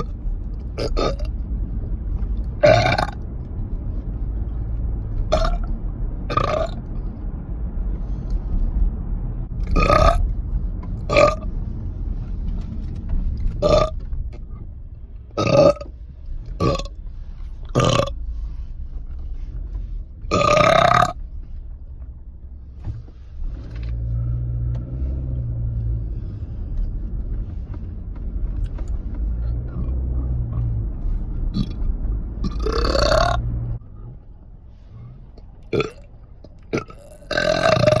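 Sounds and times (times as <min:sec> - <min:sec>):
steady low rumble: 0:00.0 - 0:38.0
person burping: 0:00.8 - 0:01.3, 0:02.6 - 0:03.2, 0:05.3 - 0:05.7, 0:06.3 - 0:06.8, 0:09.7 - 0:10.2, 0:17.8 - 0:18.1, 0:20.3 - 0:21.2, 0:32.4 - 0:33.4, 0:35.7 - 0:36.0, 0:36.7 - 0:38.0.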